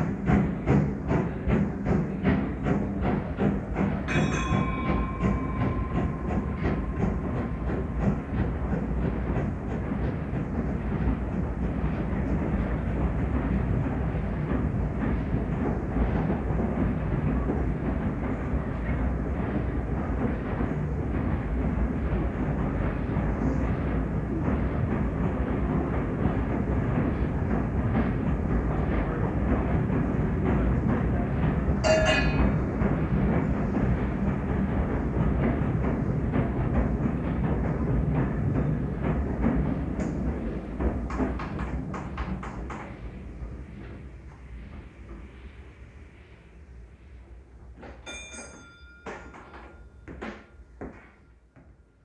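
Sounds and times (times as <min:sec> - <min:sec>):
steam train rumbling: 0:00.0 - 0:52.0.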